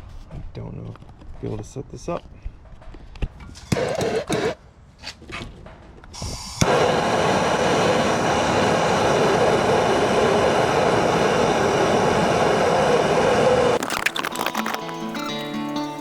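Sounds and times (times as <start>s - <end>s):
gas torch hissing: 6.3s - 13.8s.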